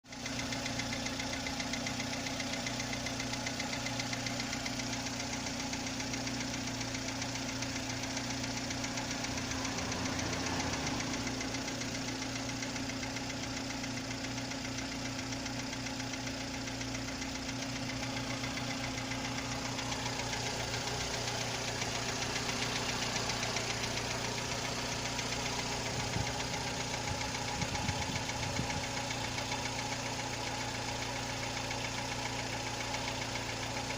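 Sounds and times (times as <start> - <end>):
engine running with rattling tick: 0.0 - 33.9.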